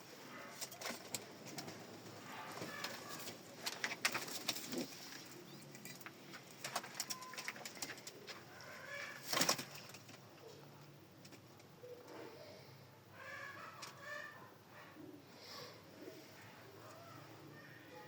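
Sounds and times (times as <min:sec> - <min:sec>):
pigeons cooing: 0:00.0 - 0:05.7, 0:11.6 - 0:18.0.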